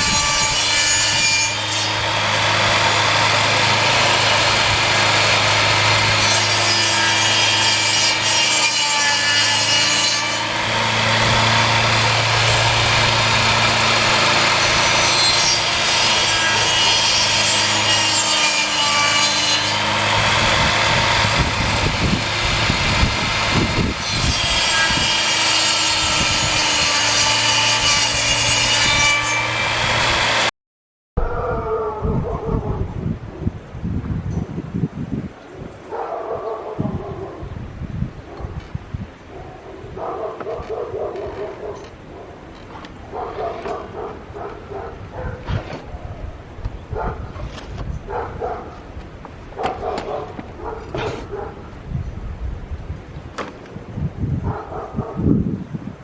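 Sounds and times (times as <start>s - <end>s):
saw blade grinding wood: 0.0s - 30.5s, 40.4s - 46.0s, 47.0s - 51.6s.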